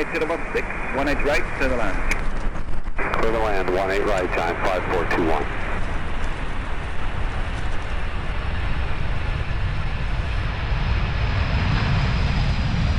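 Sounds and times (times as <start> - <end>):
jet engines rumbling: 0.0 - 12.9.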